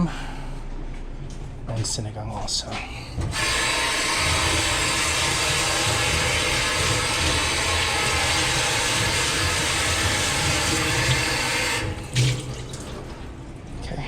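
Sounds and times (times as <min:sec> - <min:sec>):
water running from tap: 0:03.3 - 0:13.4.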